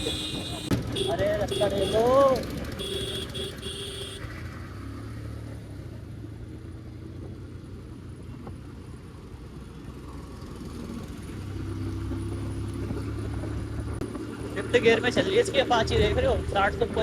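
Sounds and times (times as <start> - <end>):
motorcycle engine running: 0.0 - 4.6
road noise: 0.0 - 17.0.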